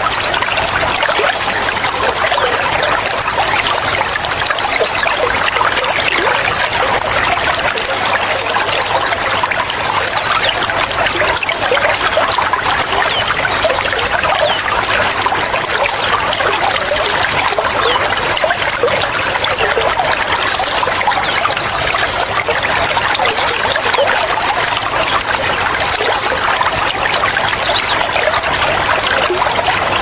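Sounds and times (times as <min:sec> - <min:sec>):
trickling water: 0:00.0 - 0:30.0.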